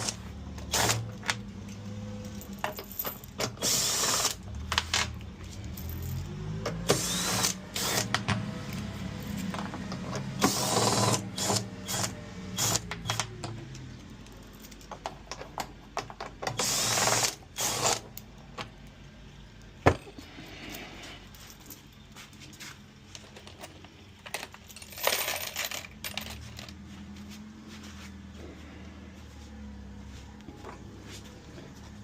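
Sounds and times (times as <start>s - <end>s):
power tool running: 3.6s - 4.4s, 6.8s - 8.2s, 10.4s - 13.3s, 16.5s - 18.0s.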